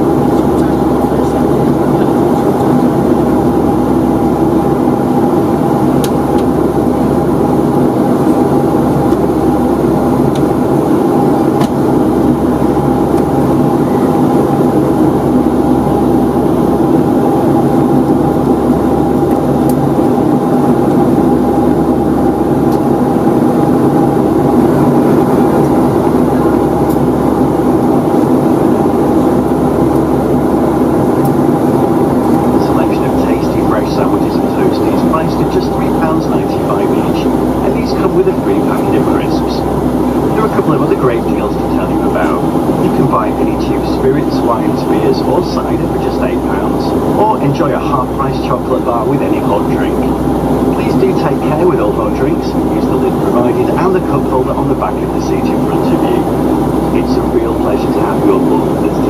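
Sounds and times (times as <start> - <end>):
airplane cabin drone: 0.0 - 59.0.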